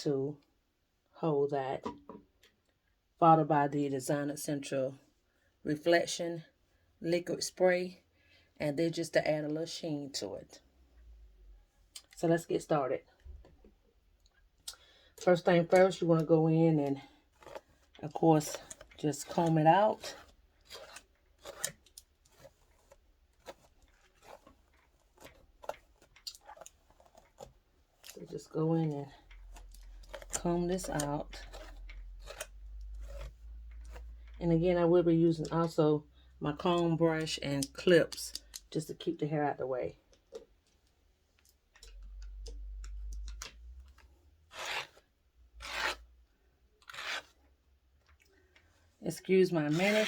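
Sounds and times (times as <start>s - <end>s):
comb scratching through hair: 17.3s - 34.2s, 44.4s - 45.0s, 45.6s - 46.1s, 46.8s - 47.4s, 49.6s - 50.0s.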